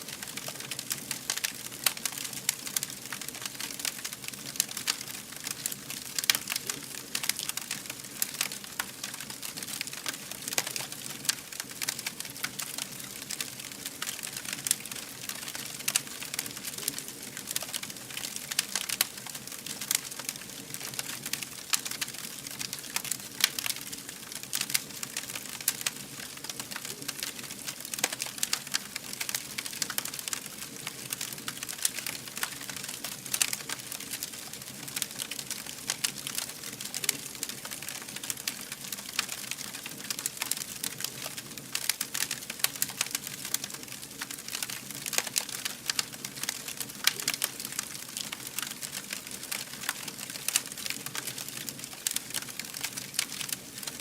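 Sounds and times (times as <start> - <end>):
fire crackling and popping: 0.0 - 54.0.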